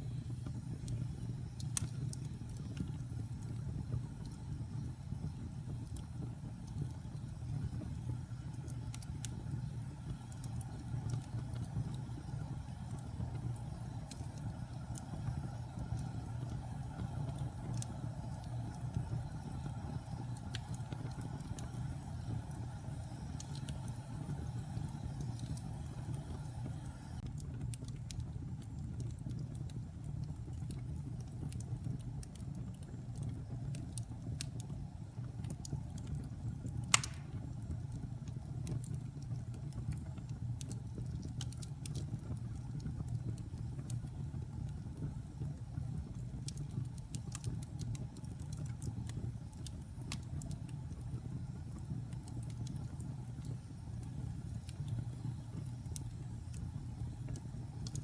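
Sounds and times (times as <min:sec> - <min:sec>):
wood fire crackling: 0:00.0 - 0:58.0
loud pop from fire: 0:36.9 - 0:37.6.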